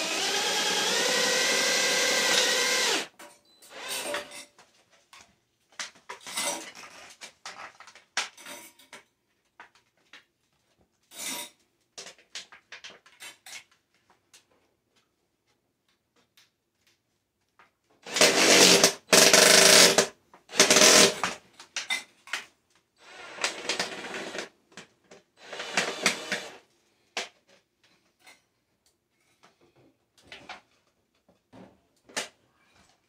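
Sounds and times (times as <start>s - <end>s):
power tool motor running: 0.0s - 3.1s, 25.4s - 26.6s.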